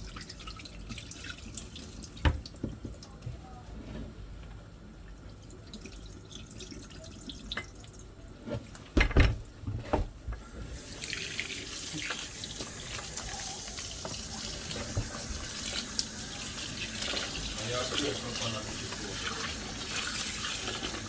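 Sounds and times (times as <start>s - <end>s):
tap water running into pot: 10.5s - 21.0s.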